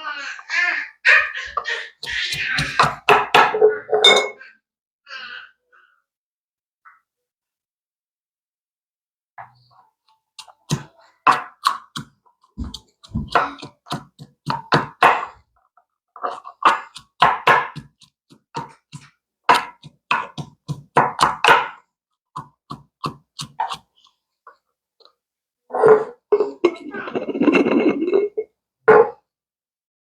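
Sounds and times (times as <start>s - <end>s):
pestle knocking in mortar: 1.7s - 3.6s, 10.4s - 15.4s, 16.3s - 21.8s, 22.4s - 23.9s.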